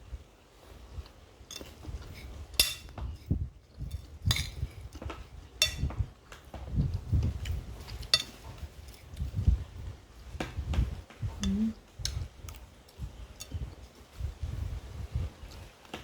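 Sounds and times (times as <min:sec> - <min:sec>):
cutlery clinking against a plate: 0:01.0 - 0:09.4, 0:12.0 - 0:14.2.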